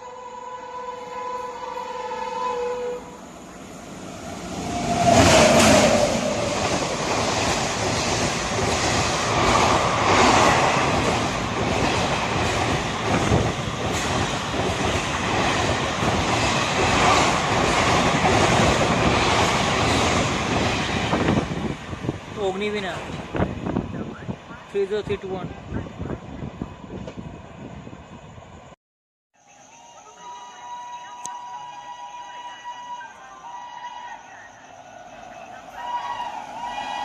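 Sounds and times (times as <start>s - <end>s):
electric locomotive passing: 0.0s - 28.8s, 29.4s - 37.0s
train coaches rumbling and clattering: 3.2s - 28.3s.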